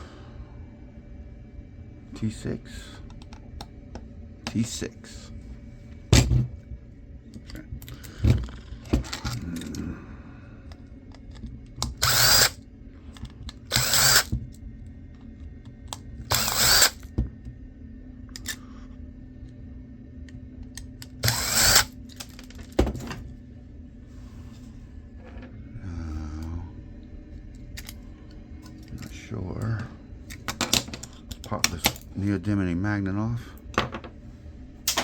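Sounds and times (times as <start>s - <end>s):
electric screwdriver whirring: 11.8s - 12.6s, 13.6s - 14.4s, 16.3s - 17.1s, 21.2s - 22.0s
small clicks of parts handled: 27.8s - 28.0s.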